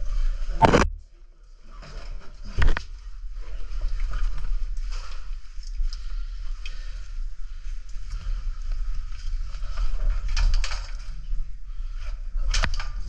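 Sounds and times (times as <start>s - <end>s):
low rumble: 0.0s - 1.2s.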